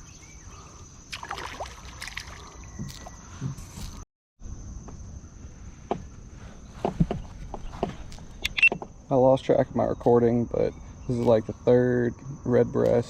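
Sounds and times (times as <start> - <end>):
low water noise: 0.6 - 3.2.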